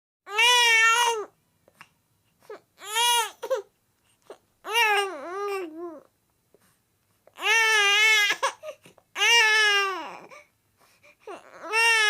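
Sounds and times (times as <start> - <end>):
baby crying: 0.3 - 1.3, 2.5 - 3.7, 4.6 - 6.1, 7.4 - 10.5, 11.2 - 12.0.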